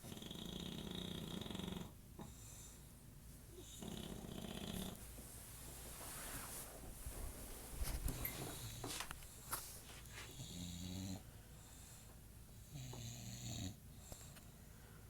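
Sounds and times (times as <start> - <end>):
dog snoring: 0.0 - 2.4, 3.6 - 5.0, 10.3 - 11.3, 12.6 - 14.4.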